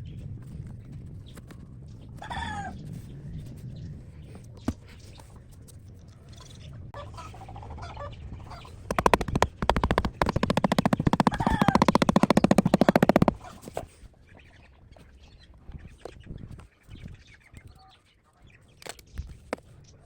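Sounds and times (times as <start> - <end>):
fast loud repeated strokes: 8.9 - 13.4.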